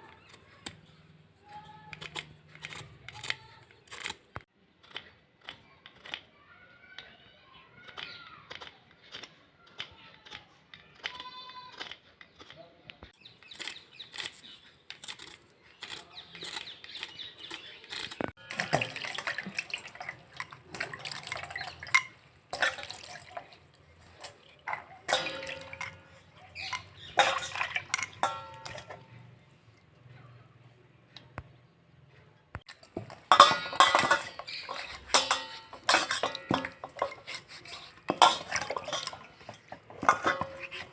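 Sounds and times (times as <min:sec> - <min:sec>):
kitchen clattering: 0:17.5 - 0:29.3, 0:32.6 - 0:40.9
water splashing and dripping: 0:18.4 - 0:26.0, 0:26.7 - 0:28.8.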